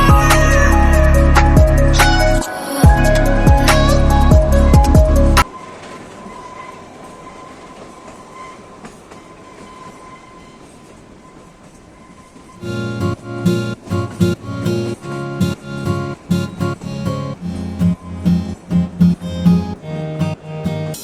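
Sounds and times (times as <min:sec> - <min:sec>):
strummed guitar music: 0:00.0 - 0:05.4, 0:12.6 - 0:21.0
background music: 0:00.0 - 0:05.5.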